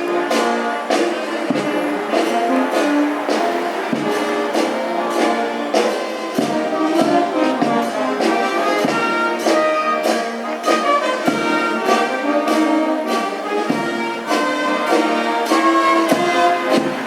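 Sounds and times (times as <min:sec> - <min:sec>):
brass band playing: 0:00.0 - 0:17.0.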